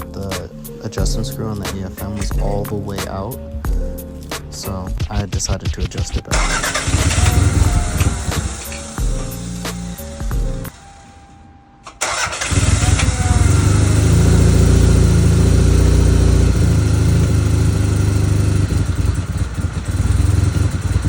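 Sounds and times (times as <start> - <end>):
car engine starting and rumbling: 6.3 - 10.7, 11.9 - 21.0.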